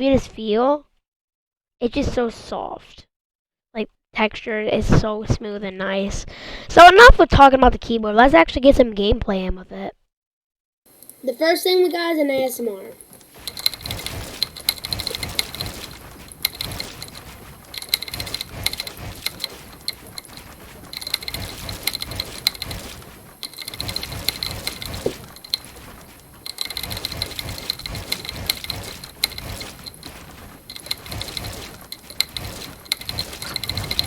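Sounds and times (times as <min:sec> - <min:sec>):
mechanical keyboard typing: 0:13.2 - 0:34.0.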